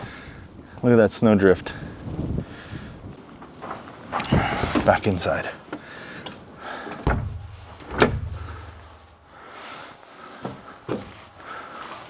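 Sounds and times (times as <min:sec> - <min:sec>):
door latch click: 0:07.1 - 0:09.3
door shutting thud: 0:07.1 - 0:09.4
faint knocks: 0:07.1 - 0:09.5.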